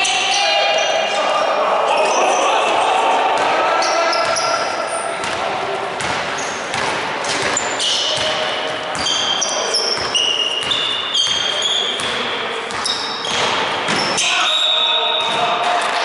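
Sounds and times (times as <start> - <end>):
players' voices: 0.0 - 16.0
sneakers squeaking on floor: 3.4 - 5.4, 6.0 - 15.7
basketball bouncing: 5.2 - 5.4, 6.0 - 9.3, 12.0 - 14.2.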